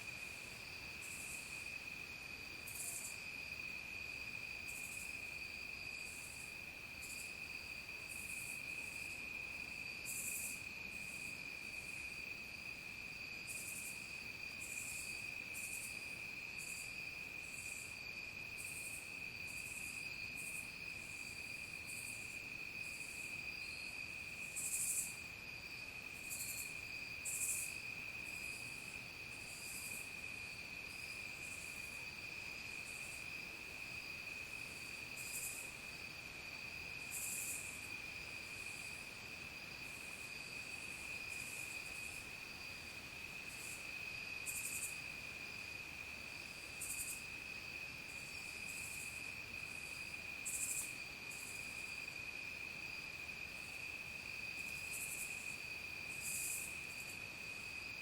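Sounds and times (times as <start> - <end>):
insects trilling: 0.0 - 58.0
raspy insect calls: 18.6 - 25.3, 26.1 - 36.0, 37.0 - 39.1, 43.4 - 45.2, 46.4 - 47.4, 48.1 - 52.1, 53.5 - 57.2.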